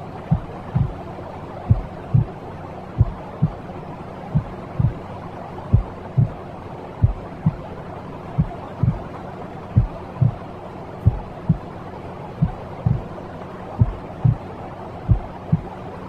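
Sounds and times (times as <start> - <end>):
white noise hiss: 0.0 - 16.0
slow heartbeat thumps: 0.3 - 1.0, 1.7 - 2.3, 3.0 - 3.6, 4.4 - 5.0, 5.7 - 6.4, 7.0 - 7.7, 8.4 - 9.1, 9.8 - 10.4, 11.0 - 11.7, 12.4 - 13.1, 13.8 - 14.4, 15.1 - 15.7.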